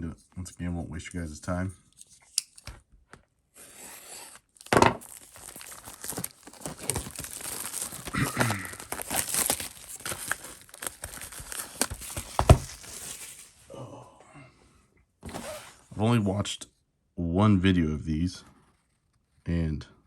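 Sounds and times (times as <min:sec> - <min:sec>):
plastic wrapping crinkling and tearing: 0:04.4 - 0:13.6.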